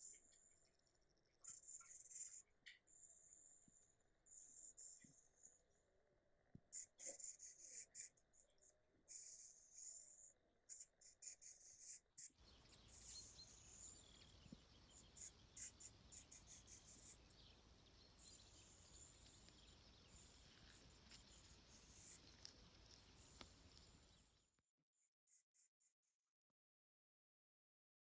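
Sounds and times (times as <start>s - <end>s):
faint steady hiss: 12.4s - 24.4s.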